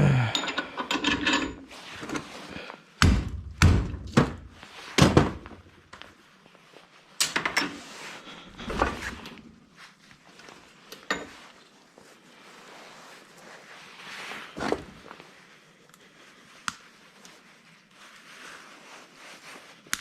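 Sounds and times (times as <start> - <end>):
scrap parts thunking and knocking: 0.2 - 5.6.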